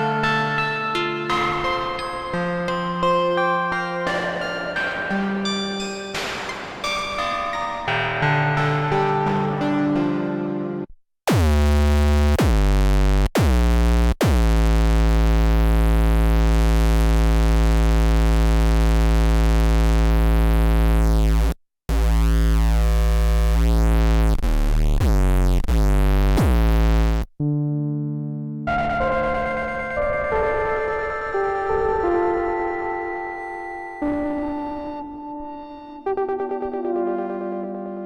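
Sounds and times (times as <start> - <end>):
deep bass synthesizer: 11.3 - 29.7.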